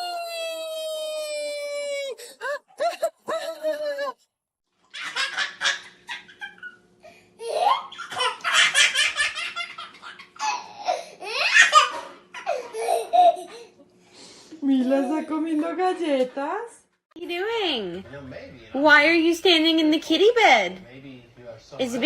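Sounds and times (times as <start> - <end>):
hearty laughter: 2.5 - 4.2.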